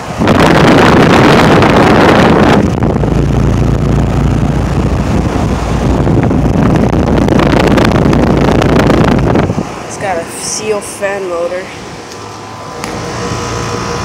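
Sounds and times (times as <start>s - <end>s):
air conditioner humming: 0.0s - 14.0s
fan air rushing over microphone: 0.0s - 14.0s.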